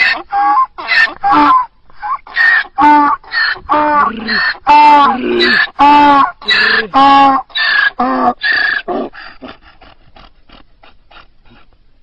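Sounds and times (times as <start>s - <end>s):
donkey braying: 0.0s - 11.8s
donkey wheezing gasps: 7.6s - 11.7s.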